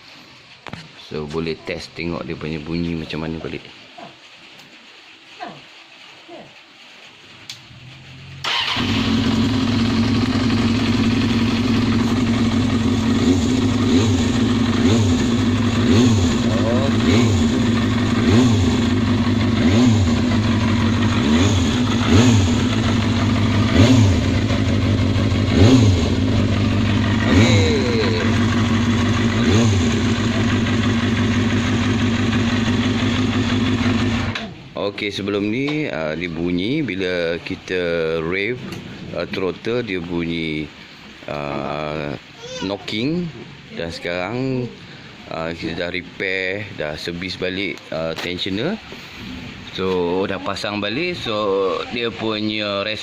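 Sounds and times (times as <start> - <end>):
motorcycle engine revving: 8.3 - 34.6.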